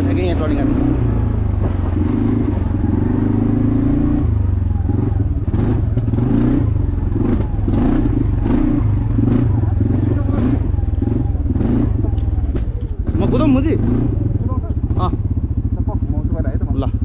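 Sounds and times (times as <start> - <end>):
quad bike engine running: 0.0 - 17.0
knocks and clatters: 1.4 - 2.8, 12.0 - 13.2.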